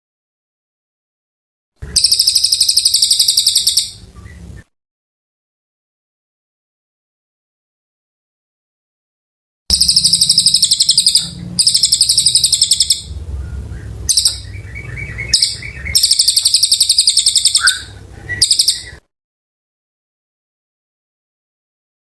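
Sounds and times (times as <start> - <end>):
bird singing trilled phrases: 1.8 - 4.6, 9.7 - 19.0
low hum: 9.7 - 19.0.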